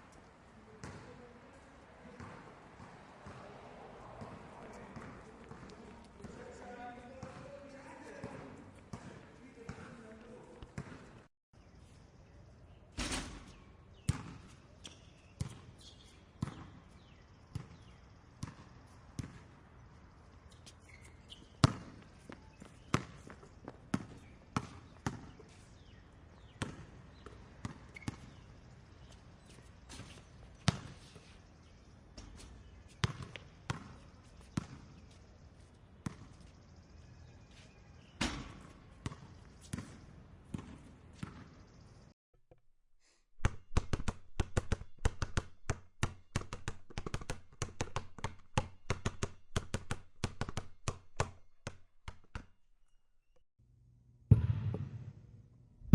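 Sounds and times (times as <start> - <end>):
basketball bouncing on hard floor: 10.8 - 11.0, 54.3 - 55.1.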